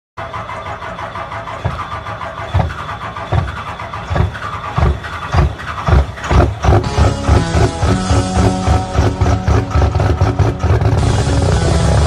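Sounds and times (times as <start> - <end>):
vehicle engine starting and running: 0.2 - 12.0
low thumps: 2.5 - 12.0.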